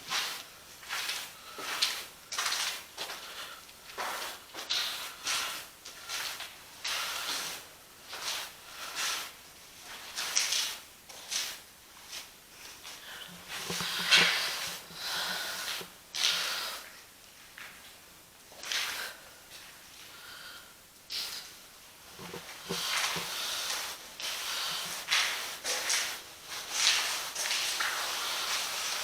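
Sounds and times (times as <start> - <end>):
footsteps crunching on gritty floor: 0.0 - 16.4.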